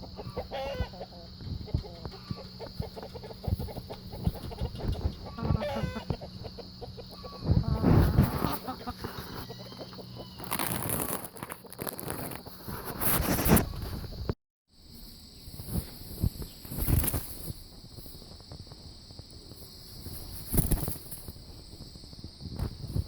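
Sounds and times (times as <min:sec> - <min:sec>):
rooster clucking and calling: 0:00.0 - 0:10.5.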